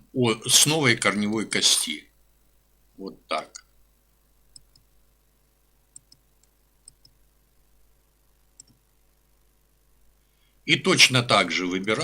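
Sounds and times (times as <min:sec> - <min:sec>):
faint computer mouse clicks: 0:04.5 - 0:04.9, 0:05.9 - 0:07.2, 0:08.6 - 0:08.8.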